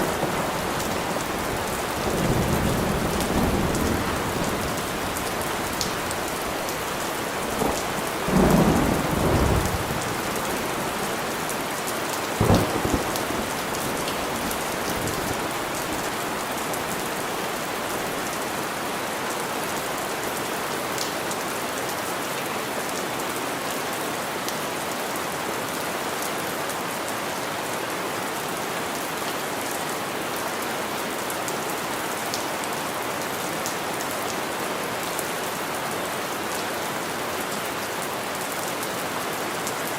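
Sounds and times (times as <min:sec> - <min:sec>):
thunder rumbling: 0:00.0 - 0:11.2, 0:12.4 - 0:16.2
steady rain: 0:00.0 - 0:39.9
sharp thunderclap: 0:12.4 - 0:15.1.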